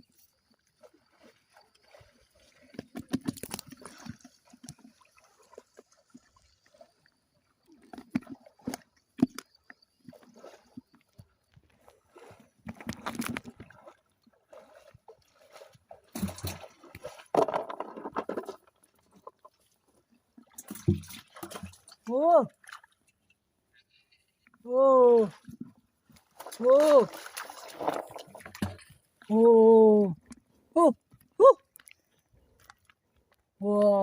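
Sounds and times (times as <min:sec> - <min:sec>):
hands splashing through mud and water: 0:11.7 - 0:17.5, 0:26.1 - 0:29.0.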